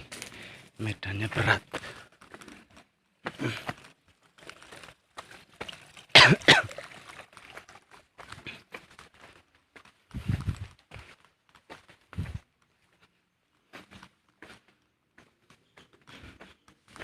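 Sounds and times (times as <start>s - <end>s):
person coughing: 6.2s - 6.8s.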